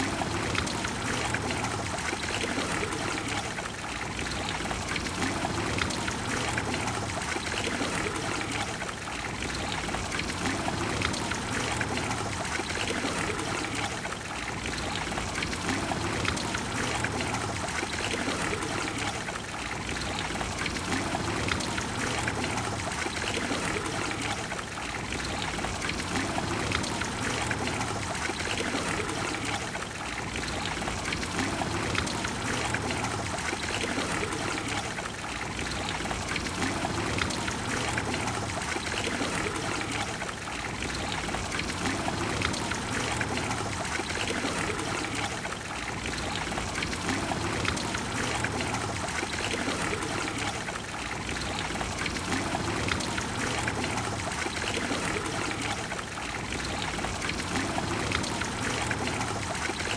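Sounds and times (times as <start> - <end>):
fountain water splashing into basin: 0.0 - 59.9.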